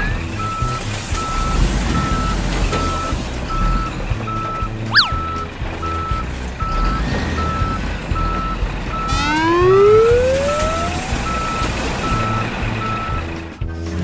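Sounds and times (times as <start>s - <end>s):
truck reversing alarm beeping: 0.0s - 13.6s
loud rising tone: 6.6s - 13.3s.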